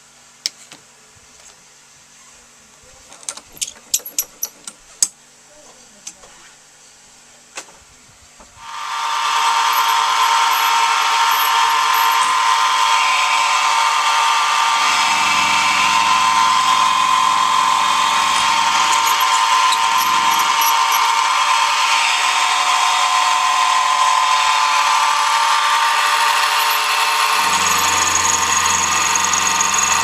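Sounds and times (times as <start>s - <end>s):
low hum: 8.6s - 26.7s
milling machine motor whine: 8.6s - 30.0s.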